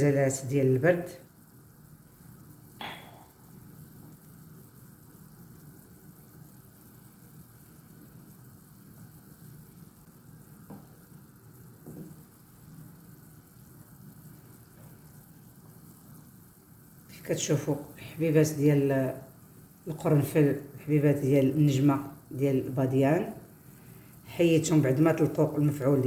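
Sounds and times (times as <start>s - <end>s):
spices sizzling in oil: 1.2s - 26.0s
soft taps: 10.6s - 11.0s, 11.8s - 12.2s.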